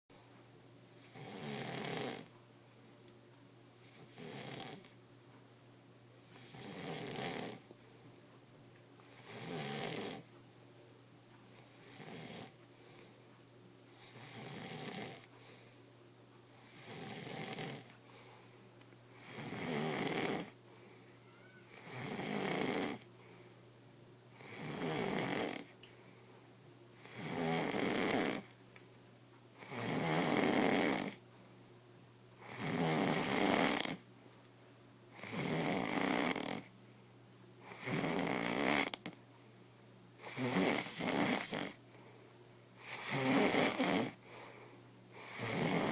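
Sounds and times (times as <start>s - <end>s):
person snoring: 1.1s - 2.3s, 4.0s - 4.9s, 6.4s - 7.7s, 9.1s - 10.3s, 11.8s - 12.6s, 14.0s - 15.3s, 16.6s - 17.9s, 19.2s - 20.6s, 21.3s - 23.0s, 24.4s - 25.7s, 27.0s - 28.5s, 29.6s - 31.2s, 32.4s - 34.0s, 35.2s - 36.7s, 37.6s - 39.2s, 40.2s - 41.8s, 42.8s - 44.2s, 45.2s - 45.9s.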